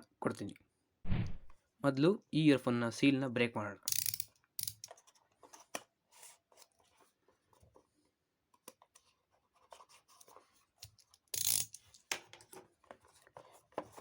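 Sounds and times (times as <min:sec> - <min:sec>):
loud scrape: 0:01.1 - 0:01.6
small clicks and rubbing: 0:08.6 - 0:14.0.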